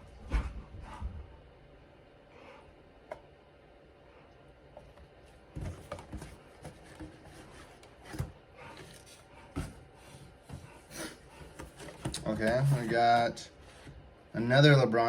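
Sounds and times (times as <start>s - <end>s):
cardboard rubbing and scraping: 5.6s - 14.0s.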